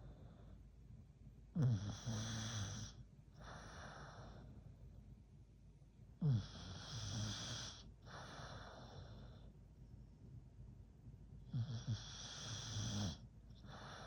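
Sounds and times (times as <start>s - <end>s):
dog snoring: 1.5s - 4.5s, 6.2s - 9.5s, 11.4s - 14.0s.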